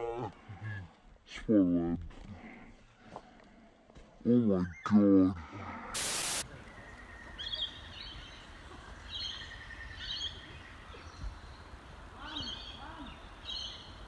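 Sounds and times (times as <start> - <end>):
birds chirping: 6.0 - 14.0.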